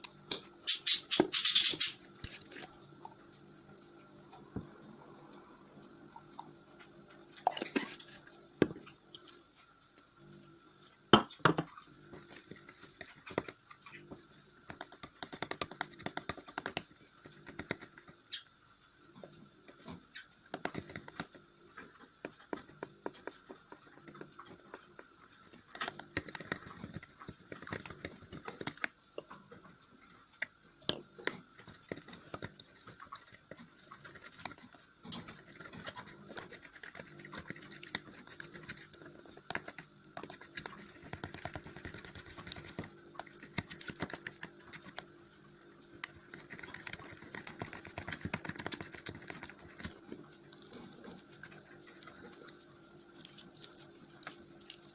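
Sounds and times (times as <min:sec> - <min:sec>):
slime being mixed by hand: 0:12.1 - 0:18.4, 0:19.2 - 0:29.3, 0:30.4 - 0:54.9.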